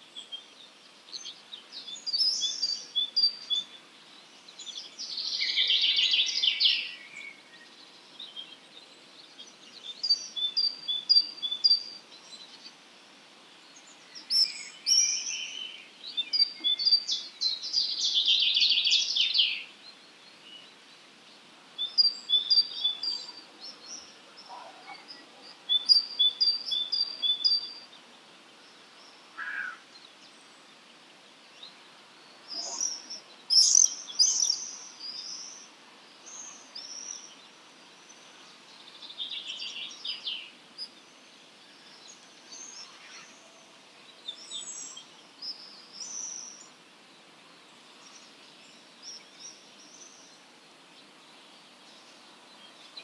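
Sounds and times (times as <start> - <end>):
songbirds singing: 0.0 - 53.0.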